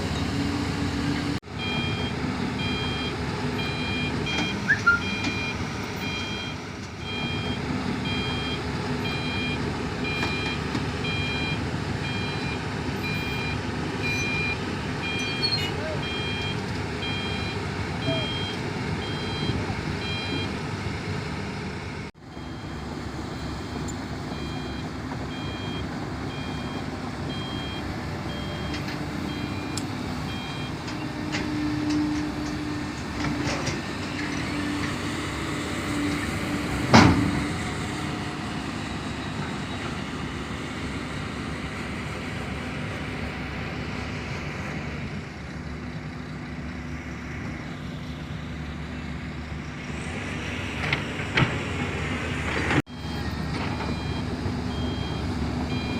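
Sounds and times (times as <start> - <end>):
heavy diesel machinery running: 0.0 - 55.9
reversing alarm beeping: 1.6 - 20.6, 23.4 - 30.8, 52.9 - 55.9.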